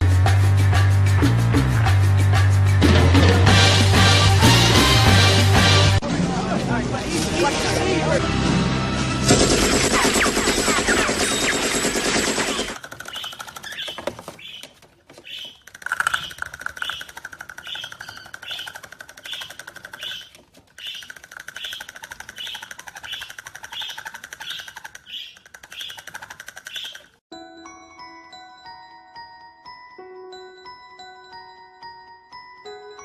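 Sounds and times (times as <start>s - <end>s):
bird chirping: 12.8s - 27.2s.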